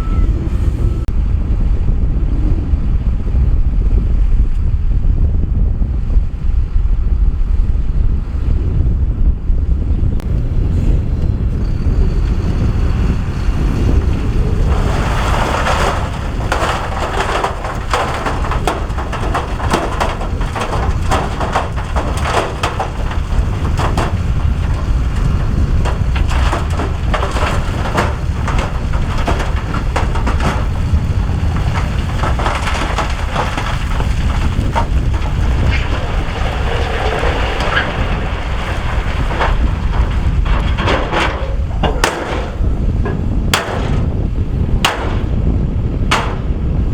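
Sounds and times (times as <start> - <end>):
diesel earthmoving machine engine: 7.4 - 46.9
rock and gravel crunching: 10.2 - 46.9.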